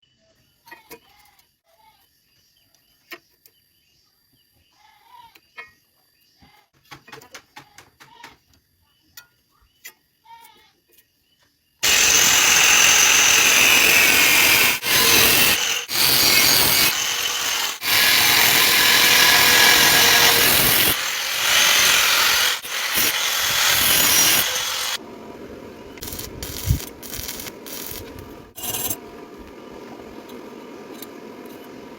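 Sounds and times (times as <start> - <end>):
welding arc crackling: 11.8 - 25.0, 26.0 - 29.0.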